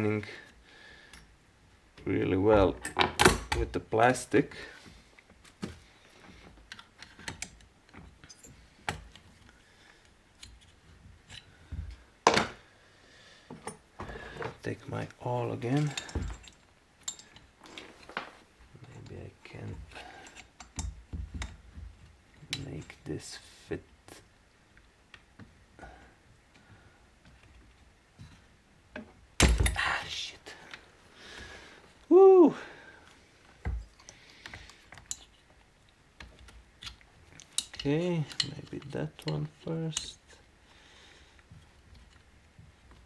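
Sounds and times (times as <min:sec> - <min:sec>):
faint clicks of plastic parts: 0:00.1 - 0:03.7, 0:04.5 - 0:12.6, 0:13.5 - 0:29.3, 0:33.0 - 0:43.0
dull thud: 0:29.4 - 0:29.8.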